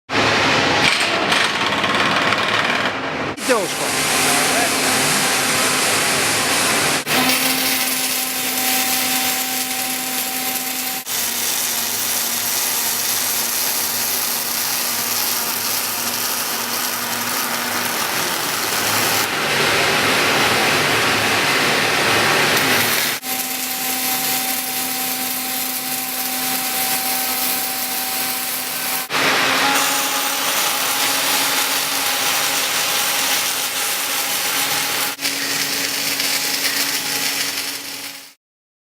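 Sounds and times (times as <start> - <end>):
machine hum: 0.1 - 38.3
welding arc hissing and crackling: 3.4 - 38.4.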